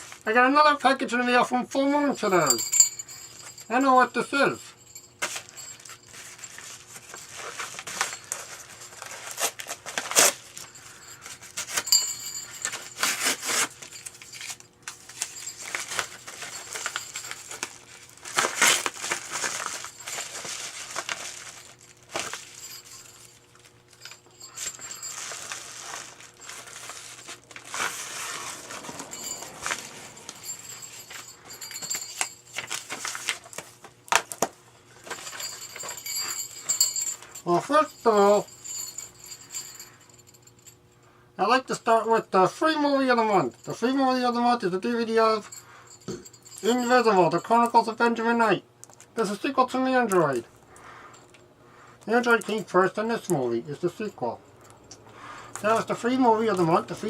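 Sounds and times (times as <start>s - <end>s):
packaging crinkling and tearing: 7.6s - 10.7s, 13.0s - 22.6s, 32.5s - 35.4s.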